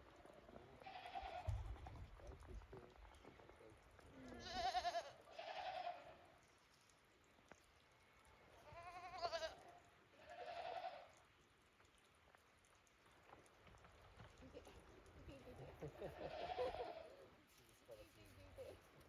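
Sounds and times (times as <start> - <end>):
goat bleating: 0.8 - 1.8, 4.2 - 6.4, 8.6 - 11.1, 16.0 - 17.3.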